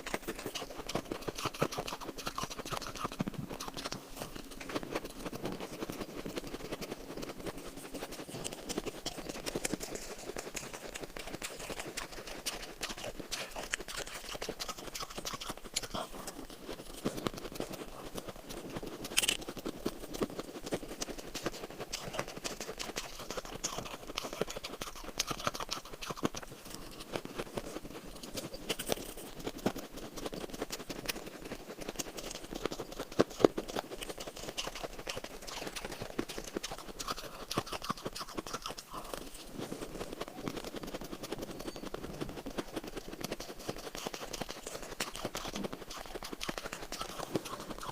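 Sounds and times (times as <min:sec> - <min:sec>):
crunching ice in mouth: 0:00.0 - 0:07.3, 0:08.2 - 0:20.7, 0:21.4 - 0:27.0, 0:31.9 - 0:39.5, 0:42.8 - 0:47.9.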